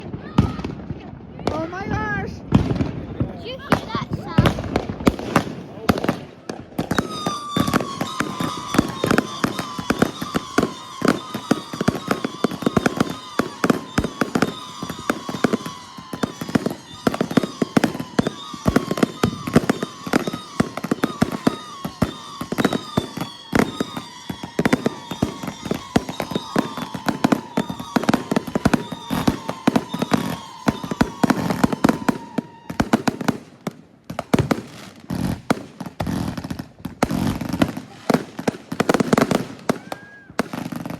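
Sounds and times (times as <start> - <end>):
fireworks barrage: 0.0 - 40.9
high firework whistle: 6.4 - 33.4, 39.2 - 40.9.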